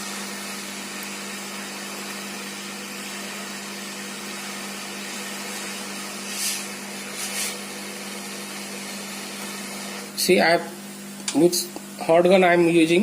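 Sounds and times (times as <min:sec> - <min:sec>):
hot air gun blowing: 0:03.1 - 0:10.2
hissing bursts: 0:05.9 - 0:07.9.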